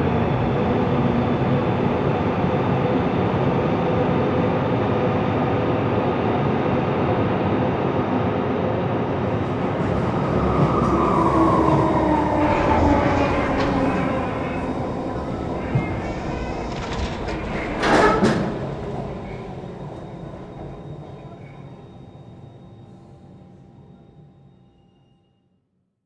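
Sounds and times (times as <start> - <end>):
elevator mechanical rumble and whine: 0.0 - 25.2.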